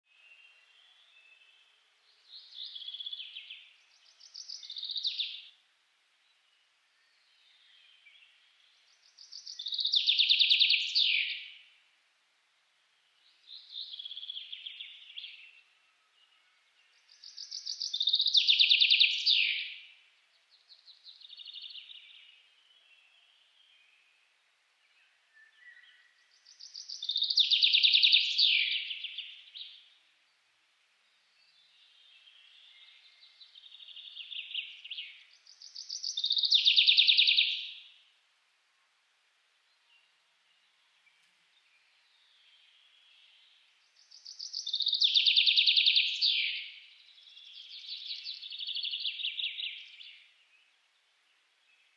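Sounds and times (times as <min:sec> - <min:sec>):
songbird trilling: 0:33.9 - 0:37.8.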